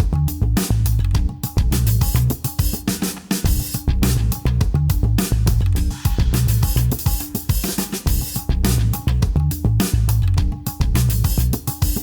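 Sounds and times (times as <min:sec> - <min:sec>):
dubstep music: 0:05.8 - 0:08.2.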